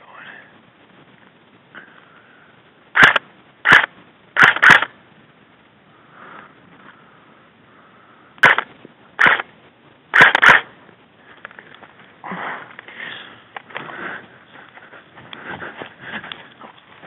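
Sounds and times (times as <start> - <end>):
sharp cracking bursts with hiss: 2.9 - 5.0, 8.4 - 9.5, 10.1 - 10.8
faint rustling: 10.6 - 17.0.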